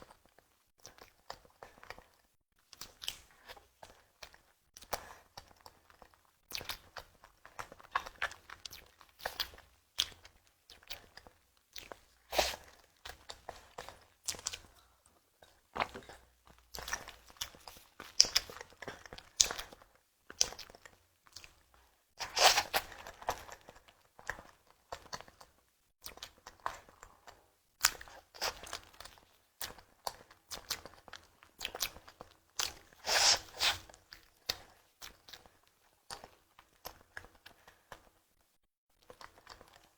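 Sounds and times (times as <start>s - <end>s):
person biting and chewing: 33.0s - 34.0s.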